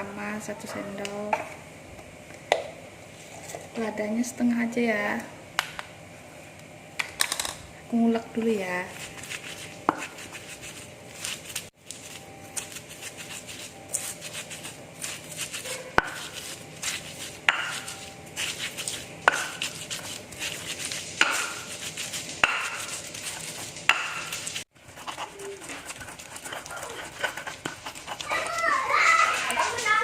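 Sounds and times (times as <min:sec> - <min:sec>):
pestle grinding in mortar: 0:08.9 - 0:30.0
pestle knocking against mortar: 0:09.8 - 0:10.2, 0:16.0 - 0:16.5, 0:17.4 - 0:18.0, 0:19.2 - 0:19.7, 0:21.2 - 0:21.7, 0:22.4 - 0:23.0, 0:23.9 - 0:24.4.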